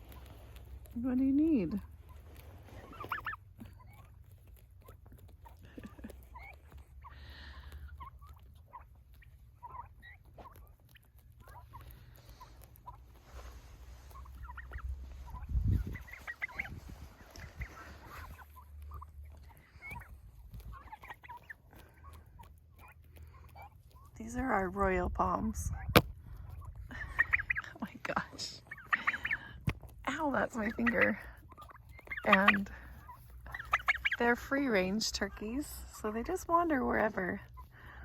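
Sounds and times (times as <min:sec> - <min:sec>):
turkeys chirping: 0:00.0 - 0:25.0, 0:25.6 - 0:38.0
steady low rumble: 0:00.0 - 0:38.0.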